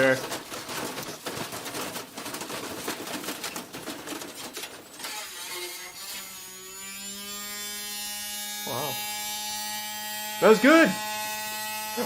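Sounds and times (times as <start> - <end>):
drum banging and clattering: 0.0 - 5.0.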